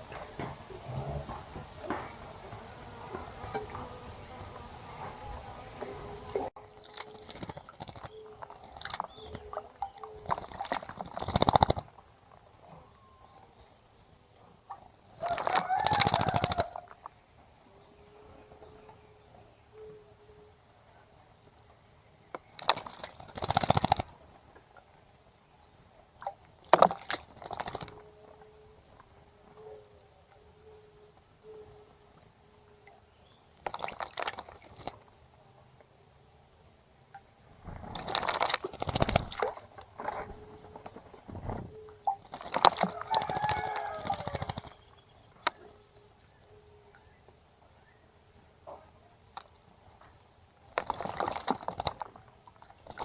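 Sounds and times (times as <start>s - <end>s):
bird wingbeats: 0.0s - 6.5s, 37.6s - 44.8s
birds chirping: 0.0s - 6.5s
water splashing: 0.0s - 7.8s, 33.6s - 35.0s, 37.7s - 40.8s, 41.4s - 44.7s.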